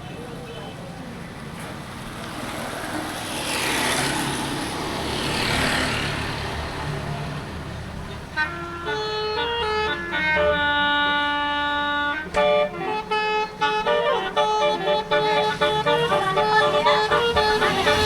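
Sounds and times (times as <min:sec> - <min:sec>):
buses rumbling and hissing past: 0:00.0 - 0:18.0
multi-tone bus horn tune: 0:08.2 - 0:18.0.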